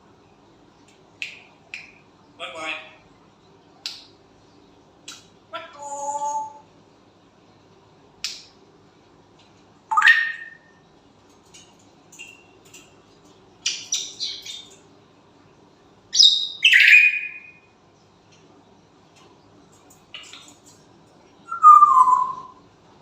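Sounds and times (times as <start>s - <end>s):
parrot squawking and chirping: 9.9s - 10.7s, 13.6s - 14.8s, 16.1s - 17.6s, 21.5s - 22.5s.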